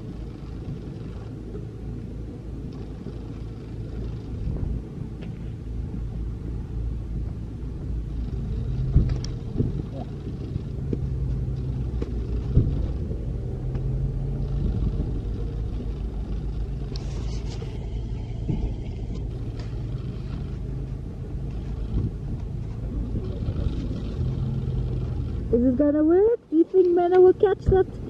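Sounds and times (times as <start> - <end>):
van engine running: 0.0 - 28.0.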